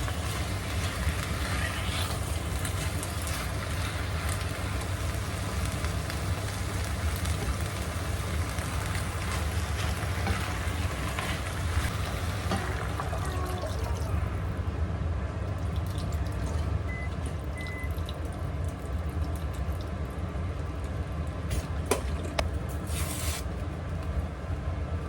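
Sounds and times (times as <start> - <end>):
low kitchen rumble: 0.0 - 25.0.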